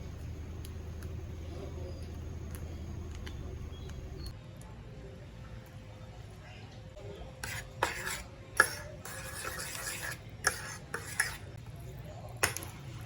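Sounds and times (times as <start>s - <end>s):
utensil scraping in a pan: 7.4s - 11.6s.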